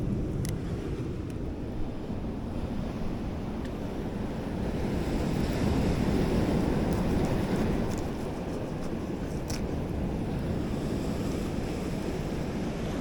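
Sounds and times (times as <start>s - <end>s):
wind buffeting microphone: 0.0s - 13.0s
surf washing against rocks: 2.6s - 13.0s.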